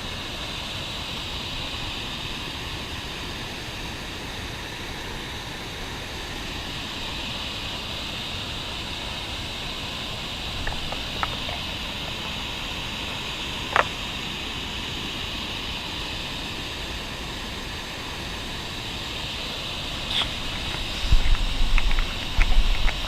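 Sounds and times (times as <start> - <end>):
waterfall roaring: 0.0 - 23.0.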